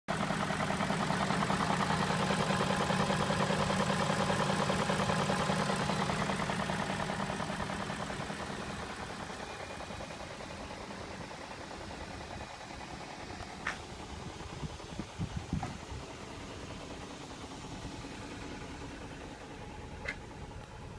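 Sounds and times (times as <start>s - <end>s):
car engine idling: 0.1s - 20.9s.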